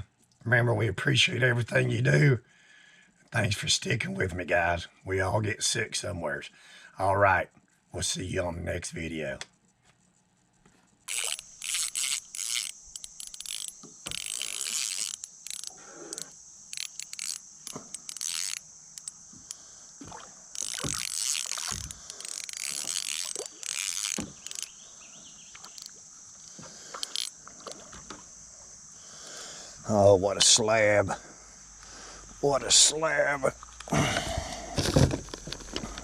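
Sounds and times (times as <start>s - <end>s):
fishing reel gear whirring: 11.0s - 28.6s.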